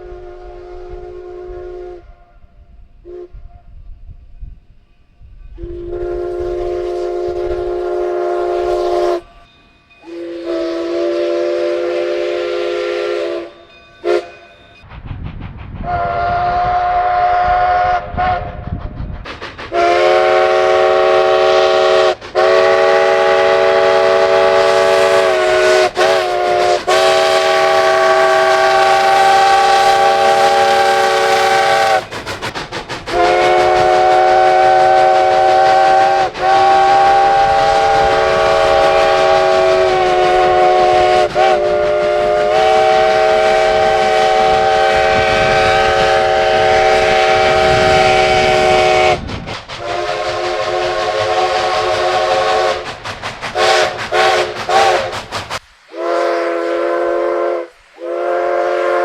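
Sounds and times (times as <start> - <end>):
locomotive horn chime: 5.2 - 14.8
low rumble: 14.9 - 19.7.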